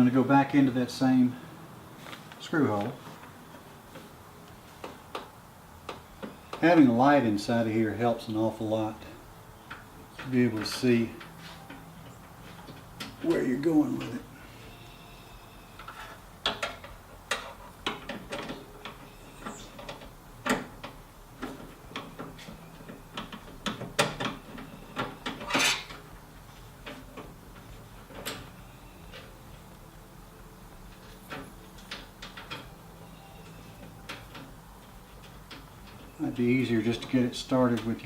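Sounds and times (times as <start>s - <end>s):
metal scrape: 24.7s - 26.0s.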